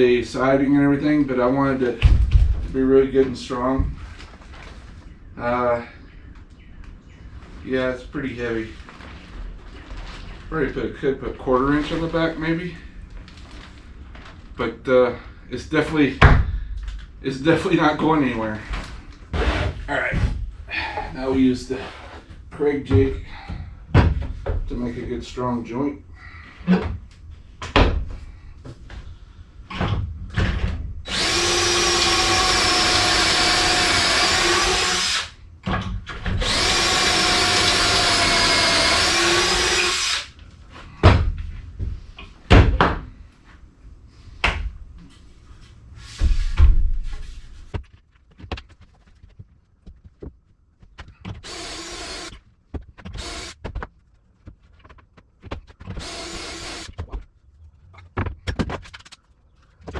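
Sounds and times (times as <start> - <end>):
drill boring into wood: 31.1 - 35.4, 36.4 - 40.3, 51.4 - 52.4, 53.1 - 53.6, 56.0 - 57.0.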